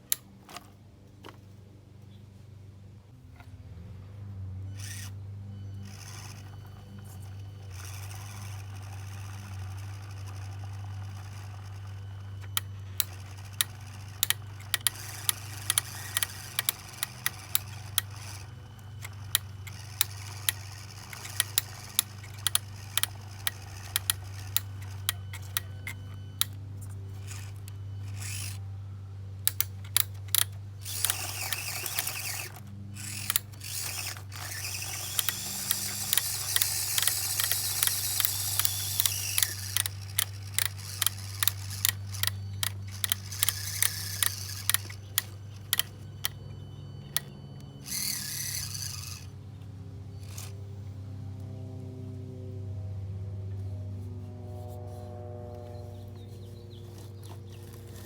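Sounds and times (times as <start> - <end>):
electric motor humming: 4.6 - 51.6, 53.8 - 58.0
sharp irregular clicks: 7.7 - 26.6, 29.4 - 46.4.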